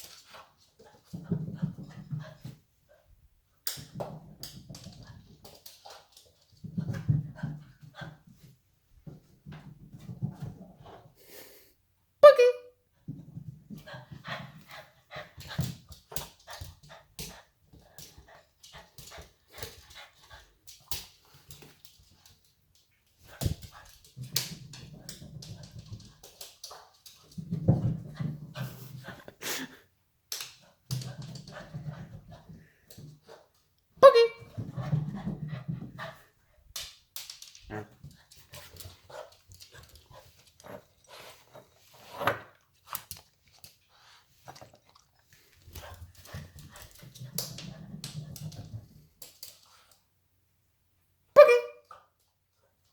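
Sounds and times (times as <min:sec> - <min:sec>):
dog claws tapping on floor: 0:30.3 - 0:33.3, 0:34.6 - 0:41.0, 0:45.4 - 0:50.0
dog barking: 0:34.0 - 0:34.4, 0:51.4 - 0:51.8.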